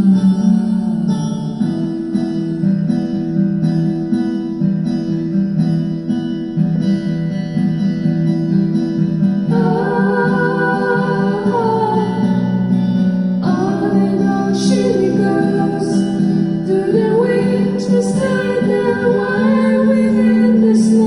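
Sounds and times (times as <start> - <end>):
acoustic guitar chords: 0.0 - 21.0.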